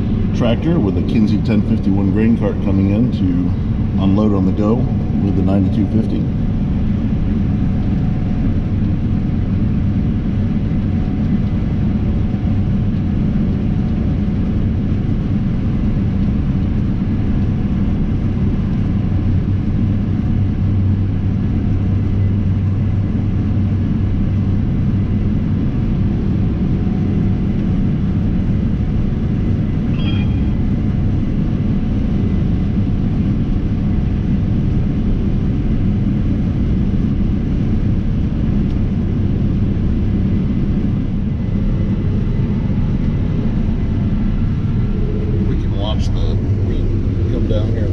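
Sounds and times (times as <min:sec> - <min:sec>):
combine harvester rumbling: 0:00.0 - 0:47.9
high beep: 0:29.9 - 0:30.8.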